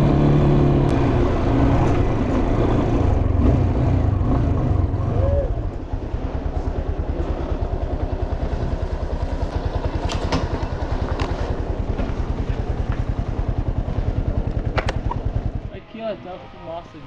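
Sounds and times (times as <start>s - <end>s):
motorcycle engine at low revs: 0.0s - 15.7s
sharp clacks over cobblestones: 9.8s - 15.4s.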